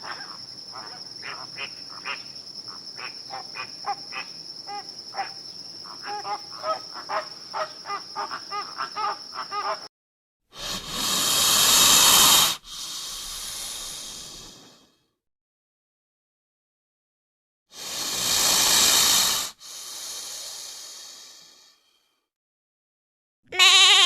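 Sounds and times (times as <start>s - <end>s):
high insect trill: 0.0s - 9.9s
long loud hiss: 10.6s - 15.0s, 17.8s - 22.0s.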